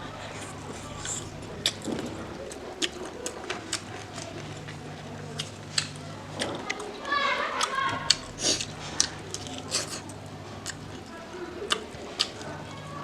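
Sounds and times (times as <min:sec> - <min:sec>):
steady low hum: 0:00.0 - 0:13.0
person chewing food: 0:00.1 - 0:12.9
wet mouth clicks and smacks: 0:05.4 - 0:06.5, 0:11.7 - 0:12.4.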